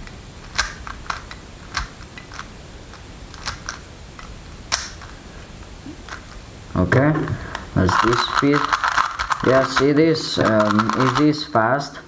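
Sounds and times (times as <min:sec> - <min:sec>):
plastic puzzle cube clicking: 0:00.4 - 0:05.1, 0:07.5 - 0:11.4.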